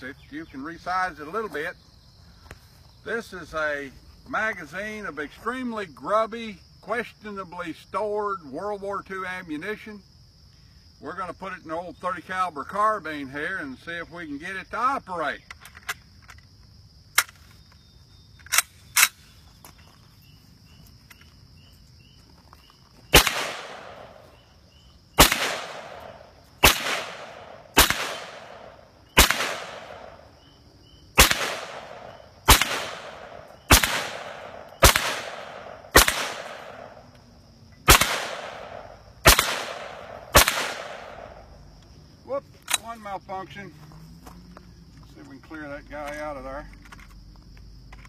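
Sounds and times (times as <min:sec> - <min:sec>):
rifle gunshots with echo: 0:23.1 - 0:24.2, 0:25.2 - 0:30.3, 0:31.2 - 0:37.0, 0:37.9 - 0:41.4.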